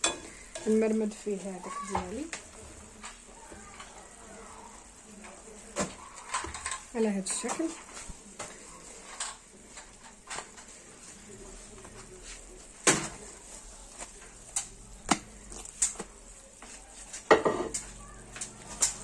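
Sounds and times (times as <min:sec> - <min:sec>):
clicks and knocks in frying pan: 0:17.2 - 0:17.9.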